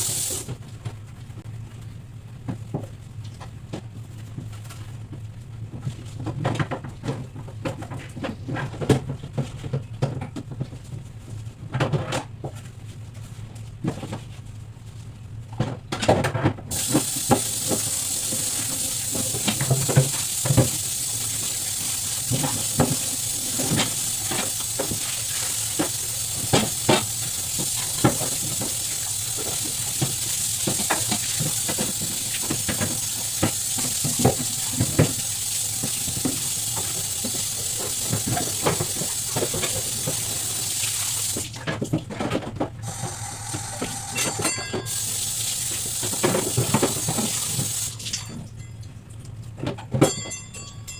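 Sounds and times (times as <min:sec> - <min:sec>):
steady hiss: 0:16.8 - 0:41.5.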